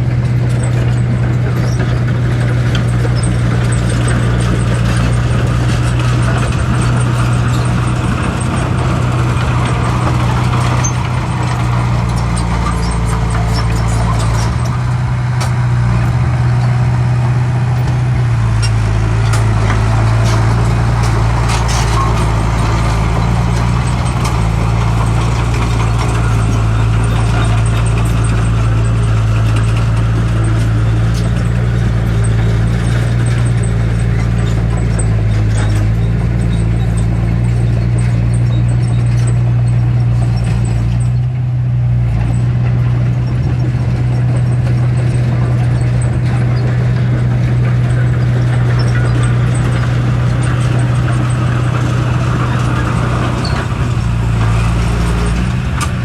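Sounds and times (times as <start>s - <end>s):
diesel engine running: 0.0s - 56.0s
short clanks and knocks: 0.2s - 16.9s, 17.8s - 41.3s.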